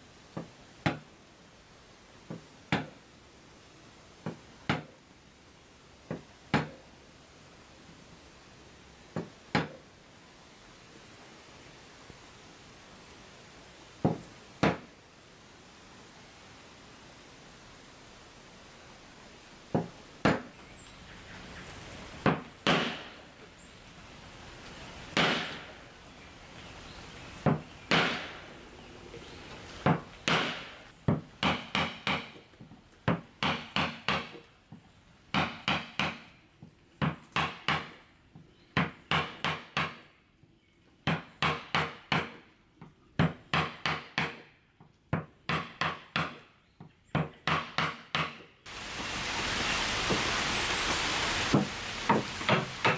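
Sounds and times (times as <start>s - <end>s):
hand tool striking wood: 2.3s - 3.0s, 4.2s - 4.9s, 6.1s - 6.8s, 9.2s - 9.8s, 14.0s - 14.9s, 22.2s - 23.2s, 25.2s - 25.7s, 27.5s - 28.4s, 29.8s - 32.4s, 33.1s - 34.4s, 38.8s - 40.0s, 43.2s - 44.5s, 45.2s - 46.4s, 47.2s - 48.5s, 51.5s - 52.9s.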